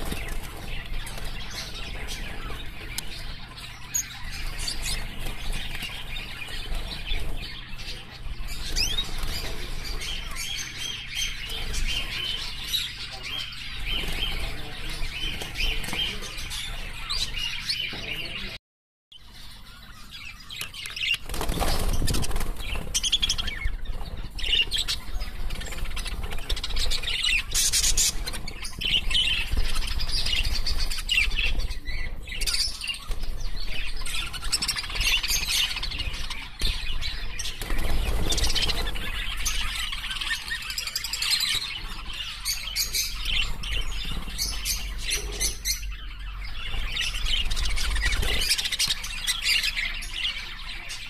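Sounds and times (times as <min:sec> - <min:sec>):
wings fluttering: 0:00.0 - 0:03.3, 0:03.9 - 0:10.8, 0:13.6 - 0:17.2, 0:21.0 - 0:40.6, 0:46.7 - 0:49.2
birds chirping and chattering: 0:00.0 - 0:18.6, 0:19.2 - 0:51.0.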